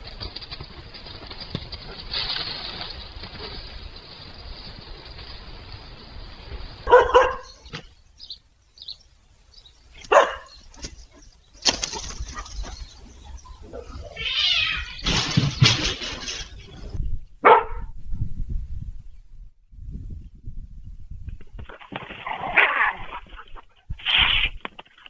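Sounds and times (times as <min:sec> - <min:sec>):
cat crying: 0:13.9 - 0:15.1.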